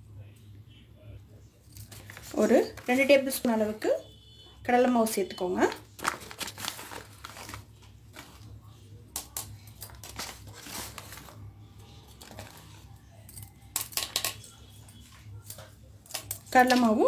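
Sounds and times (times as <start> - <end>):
flour scraping and rustling: 5.8 - 8.6, 9.8 - 12.9.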